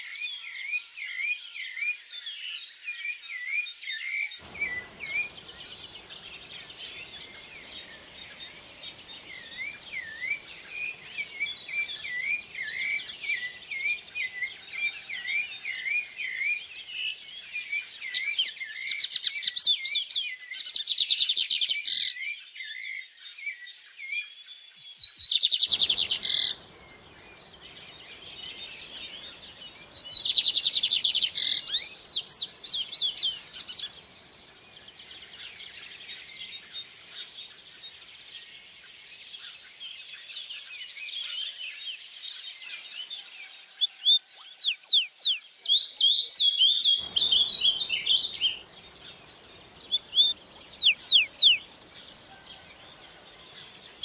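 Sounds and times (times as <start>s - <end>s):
songbirds chirping and trilling: 0.0s - 54.0s
faint stream water rushing: 4.4s - 18.8s, 25.6s - 39.7s, 46.4s - 54.0s.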